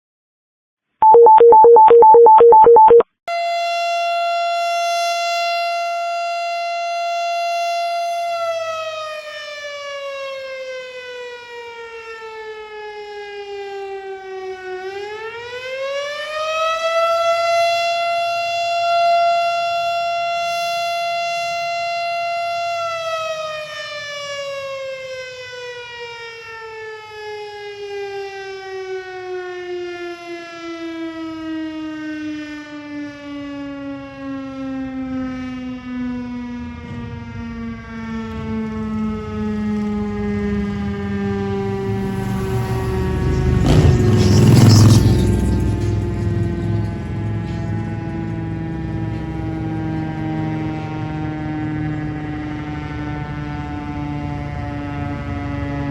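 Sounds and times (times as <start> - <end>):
pulsing two-tone beeps: 1.0 - 3.0
fire station siren wailing: 1.0 - 55.9.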